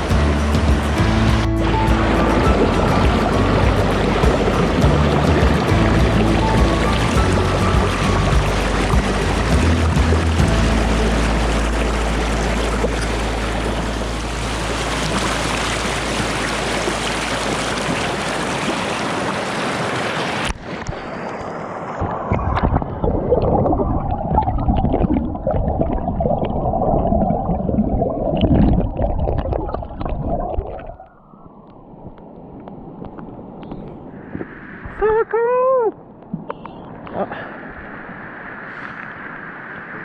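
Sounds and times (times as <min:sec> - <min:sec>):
rushing river water: 0:00.0 - 0:31.0
muffled water gurgling: 0:00.0 - 0:35.0
small knocks underwater: 0:00.6 - 0:10.9.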